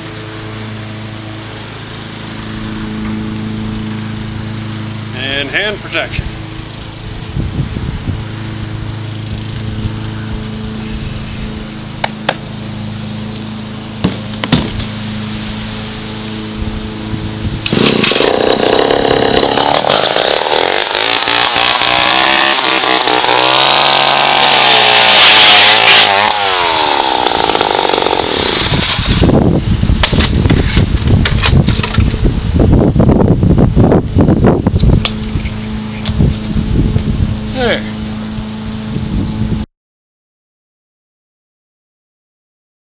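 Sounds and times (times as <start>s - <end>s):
chainsaw idling and revving: 8.1s - 30.4s.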